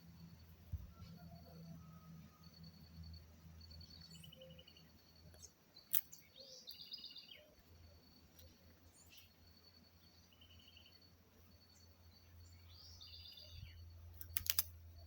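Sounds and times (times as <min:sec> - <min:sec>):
birds chirping and trilling: 0:03.5 - 0:14.3
sharp click: 0:14.2 - 0:14.7.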